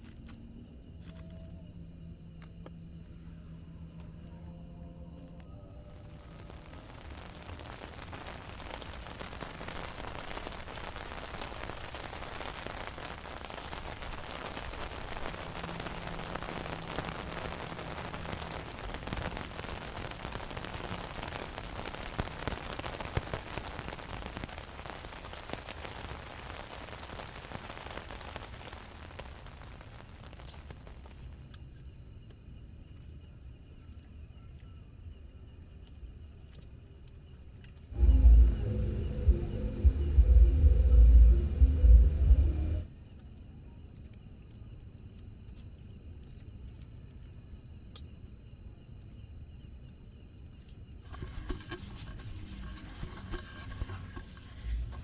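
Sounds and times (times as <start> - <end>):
steady rain falling: 5.2 - 31.5, 37.7 - 42.9, 51.0 - 55.0
faint high tones: 38.0 - 42.9.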